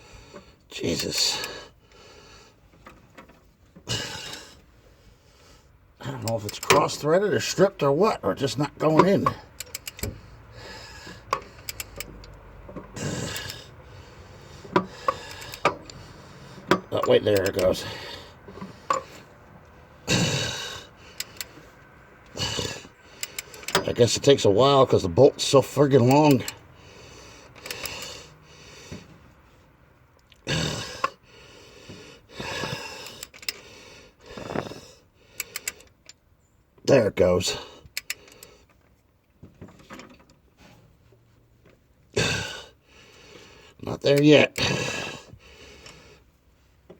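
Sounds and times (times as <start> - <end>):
man breathing hard: 0.0 - 2.8, 3.8 - 6.0, 9.4 - 16.9, 17.6 - 23.8, 26.5 - 29.7, 30.4 - 36.0, 42.2 - 43.8, 44.6 - 46.4
torque wrench ratcheting clicks: 6.0 - 12.4, 13.0 - 13.7, 14.7 - 16.1, 16.7 - 18.2, 20.1 - 21.7, 22.3 - 26.6, 27.5 - 28.2, 32.4 - 33.6, 35.4 - 36.2, 37.9 - 38.5.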